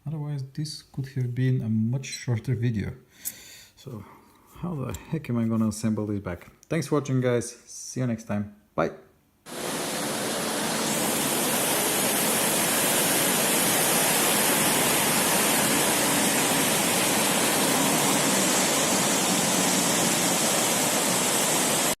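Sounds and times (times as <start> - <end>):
steady rushing hiss: 9.5 - 22.0.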